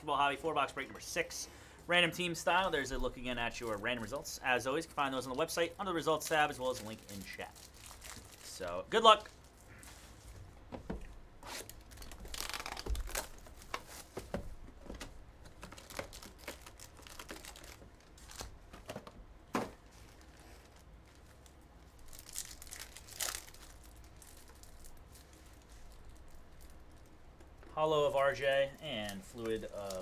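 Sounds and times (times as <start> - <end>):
foil wrappers crinkling: 0.5 - 10.6, 11.4 - 14.2, 14.8 - 19.0, 19.6 - 30.0
card packs being torn open: 6.1 - 9.9, 11.4 - 14.0, 15.4 - 19.0, 19.8 - 27.0, 28.4 - 30.0.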